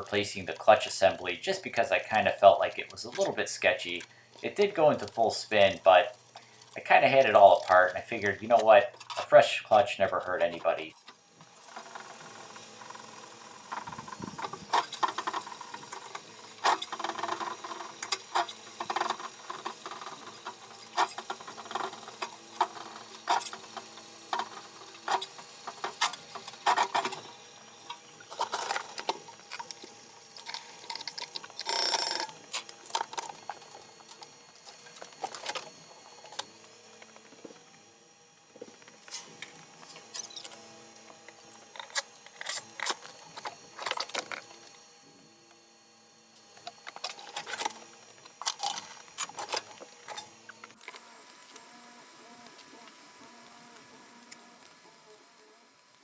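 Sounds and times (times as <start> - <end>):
clicks and rattles of hand work: 13.7 - 37.4.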